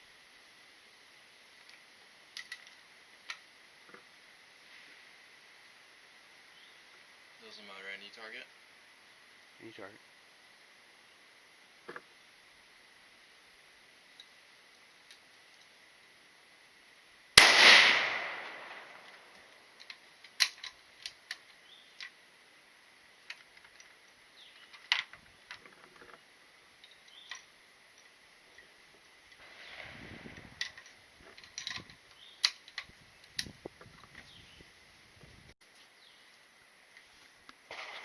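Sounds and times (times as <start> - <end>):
small clicks and knocks: 1.6 - 4.1, 19.3 - 22.2, 24.6 - 26.2, 30.6 - 34.3
gunshot: 17.4 - 19.1, 37.7 - 38.0.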